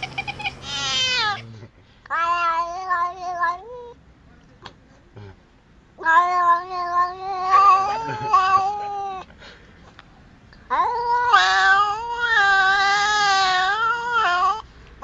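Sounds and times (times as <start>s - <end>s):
cat yowling: 0.0s - 1.5s, 6.0s - 9.2s, 10.7s - 14.6s.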